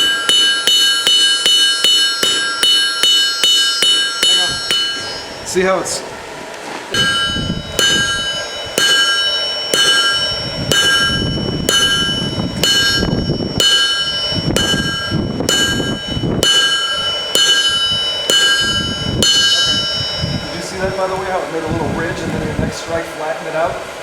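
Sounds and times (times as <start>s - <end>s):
hammer striking chisel on anvil: 0.0s - 5.5s, 6.9s - 20.5s
anvil ringing: 0.0s - 6.0s, 6.9s - 21.2s.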